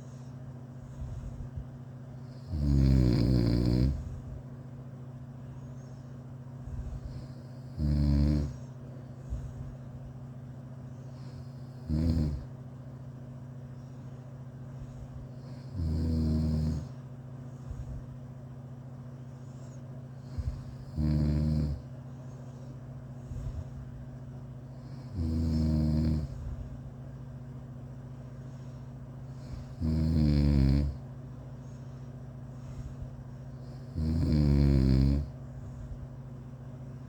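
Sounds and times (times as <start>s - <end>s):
person snoring: 2.3s - 4.3s, 6.6s - 8.7s, 11.2s - 12.5s, 15.4s - 17.0s, 20.2s - 21.8s, 24.8s - 26.6s, 29.3s - 31.0s, 33.6s - 35.4s.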